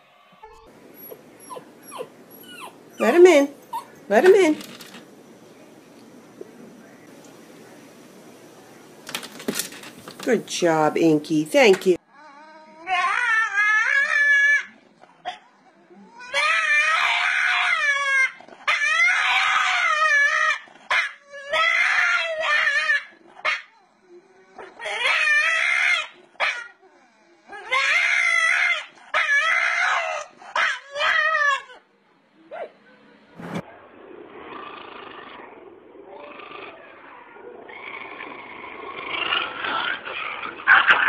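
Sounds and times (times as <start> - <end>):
dog howling: 12.2 - 14.8, 16.0 - 31.8.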